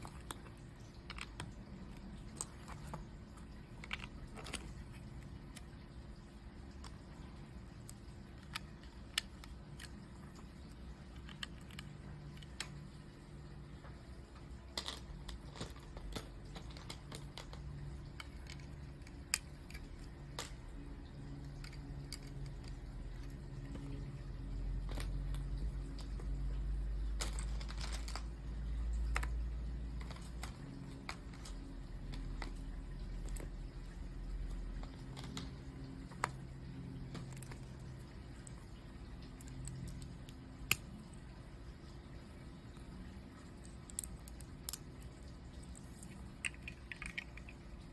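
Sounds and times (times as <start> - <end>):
plastic bricks clicking together: 0.0 - 5.8, 6.7 - 12.9, 14.7 - 23.9, 27.0 - 33.6, 43.4 - 47.9
rummaging through loose pieces: 27.2 - 28.4.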